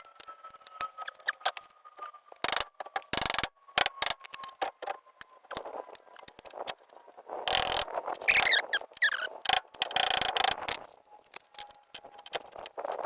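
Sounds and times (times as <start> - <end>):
rapid clicking: 2.4 - 4.7, 7.5 - 10.8.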